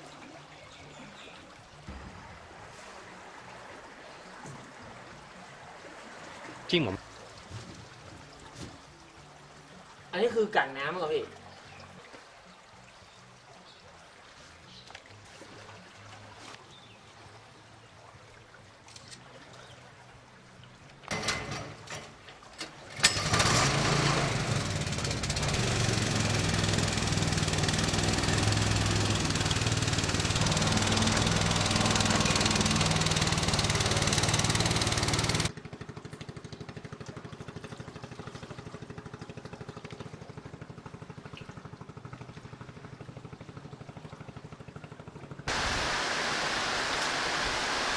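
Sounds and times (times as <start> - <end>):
small engine running: 22.9 - 47.9.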